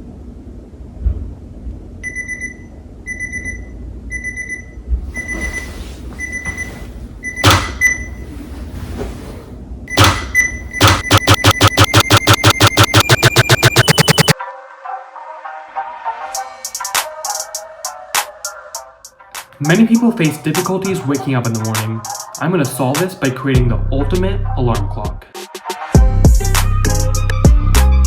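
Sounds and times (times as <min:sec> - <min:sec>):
electronic alarm beeping: 0:02.0 - 0:08.2, 0:09.9 - 0:14.4
loud thumps: 0:07.4 - 0:07.9, 0:09.9 - 0:14.4.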